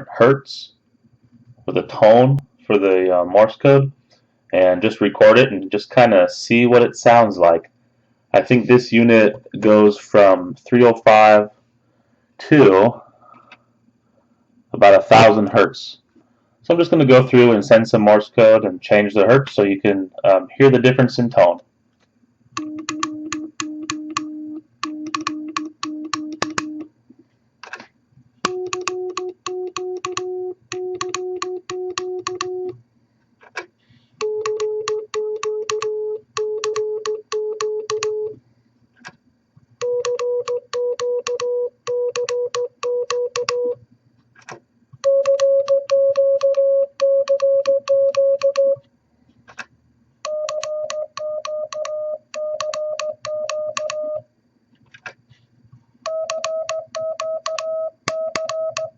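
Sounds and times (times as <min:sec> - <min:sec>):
morse code tones: 0:22.6 - 0:26.9, 0:28.5 - 0:32.8, 0:34.2 - 0:38.4, 0:39.8 - 0:43.8, 0:45.0 - 0:48.8, 0:50.2 - 0:54.3, 0:56.1 - 0:58.9.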